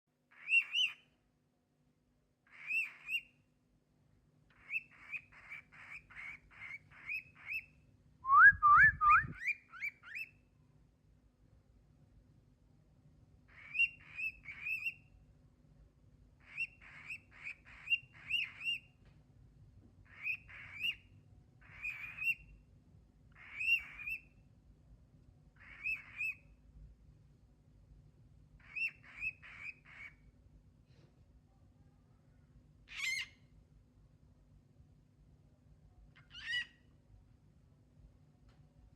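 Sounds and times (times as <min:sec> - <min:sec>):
cockatiel chirping: 0:00.3 - 0:01.0, 0:02.5 - 0:03.4, 0:04.5 - 0:07.8, 0:09.1 - 0:10.4, 0:13.5 - 0:15.1, 0:16.4 - 0:19.0, 0:20.1 - 0:22.5, 0:23.3 - 0:24.4, 0:25.6 - 0:26.6, 0:28.6 - 0:30.2, 0:32.9 - 0:33.4, 0:36.2 - 0:36.8
cockatiel whistling: 0:00.4 - 0:01.0, 0:08.3 - 0:10.3.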